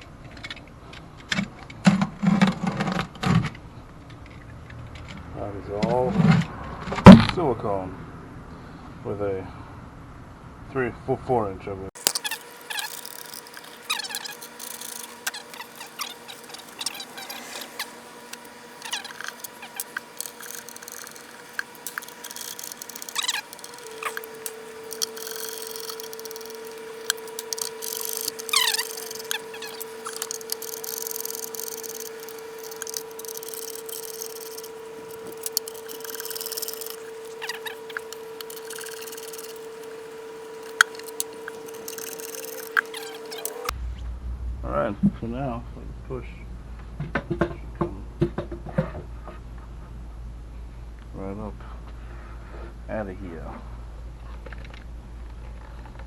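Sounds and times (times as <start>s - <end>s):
prying and scraping wooden box: 12.0s - 43.7s
squeaks of silicone and wood: 12.0s - 43.7s.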